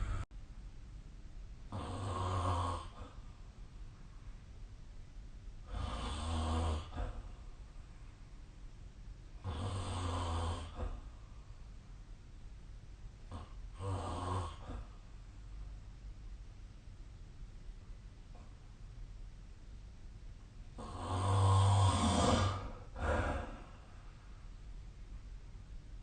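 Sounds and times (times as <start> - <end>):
person snoring: 0.0 - 0.2, 20.8 - 23.8.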